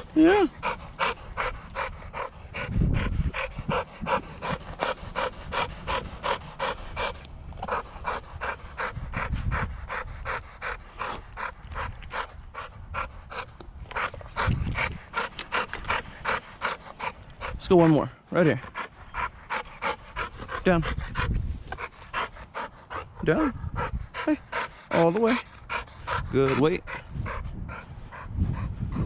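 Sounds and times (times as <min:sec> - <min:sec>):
low rumbles: 0:00.0 - 0:17.8
dog panting: 0:00.0 - 0:29.0.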